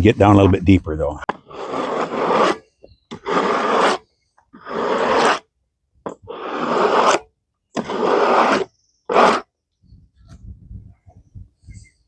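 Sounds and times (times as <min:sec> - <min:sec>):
scraping on wood: 0:01.2 - 0:05.4, 0:06.0 - 0:09.5.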